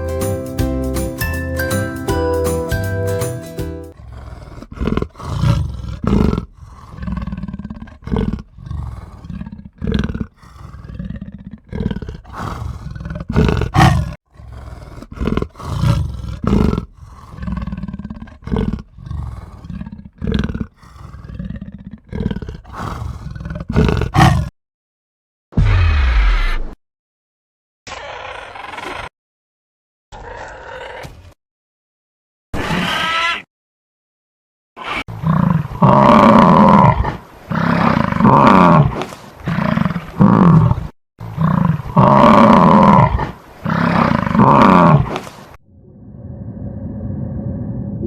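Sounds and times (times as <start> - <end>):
chiming jingle: 0.0 - 3.9
large animal roaring: 3.9 - 24.5, 30.2 - 31.1, 34.9 - 48.0.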